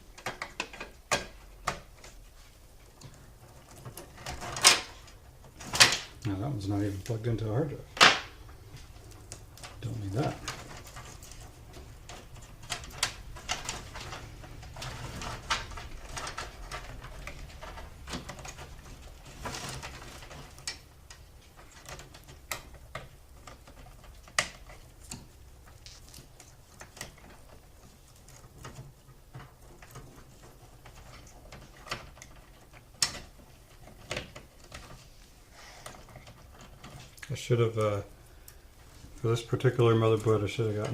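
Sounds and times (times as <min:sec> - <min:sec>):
cables clicking and rustling: 0:00.0 - 0:40.9.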